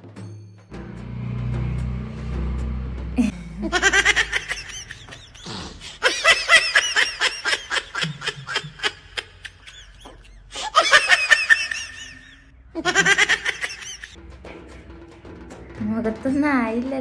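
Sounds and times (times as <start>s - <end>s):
person laughing in high bursts: 3.2s - 14.2s.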